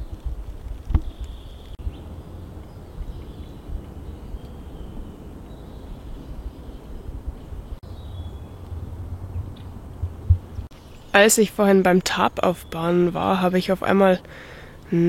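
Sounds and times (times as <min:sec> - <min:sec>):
low rumble: 0:00.0 - 0:11.0
faint birdsong: 0:00.0 - 0:15.0.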